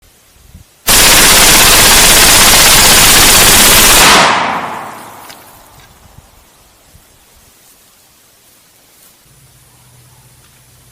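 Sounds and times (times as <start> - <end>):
submachine gun full-auto burst: 0.9 - 5.2
gunshot echo: 3.7 - 5.7.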